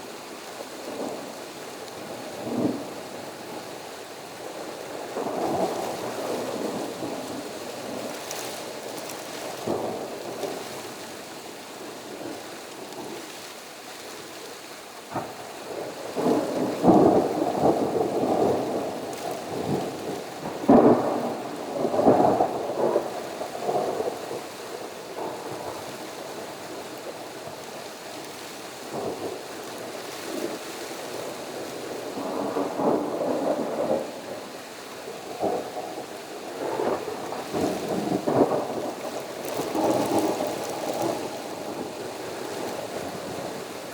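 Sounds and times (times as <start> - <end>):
steady rain: 0.0 - 43.9
thunder rumbling: 35.1 - 43.9.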